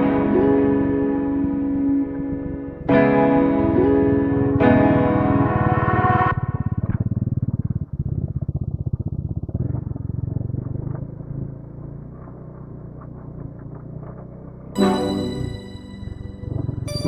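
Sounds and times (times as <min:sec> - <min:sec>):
motorcycle engine running: 0:06.3 - 0:14.7.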